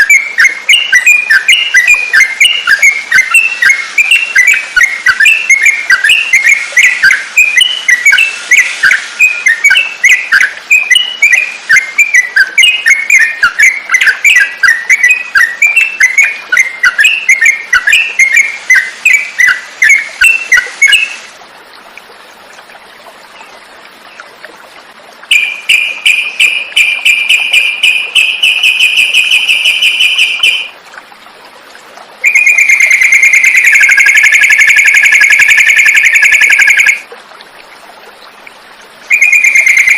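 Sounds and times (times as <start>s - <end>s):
bird chirping and whistling: 0.0s - 21.2s, 25.3s - 30.7s, 32.2s - 37.0s, 39.1s - 39.9s
bird trilling: 32.2s - 37.0s, 39.1s - 39.9s.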